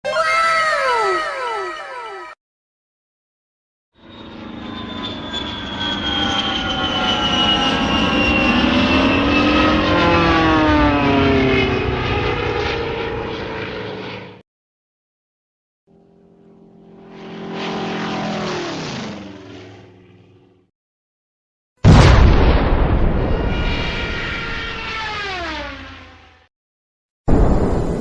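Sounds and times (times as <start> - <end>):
propeller aeroplane flying past: 4.0 - 14.4, 15.9 - 20.7, 23.8 - 26.5.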